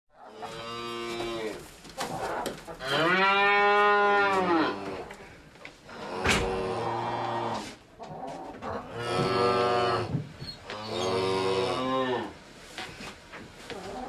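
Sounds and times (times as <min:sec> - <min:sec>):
cows mooing: 0:00.3 - 0:01.6, 0:02.8 - 0:05.2, 0:05.9 - 0:07.7, 0:08.7 - 0:12.4.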